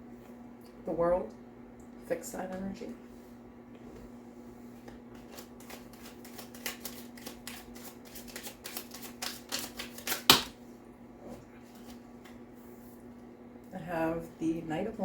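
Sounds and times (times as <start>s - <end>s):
faint steady hum: 0.0s - 15.0s
cards tapping and flicking: 4.9s - 10.6s.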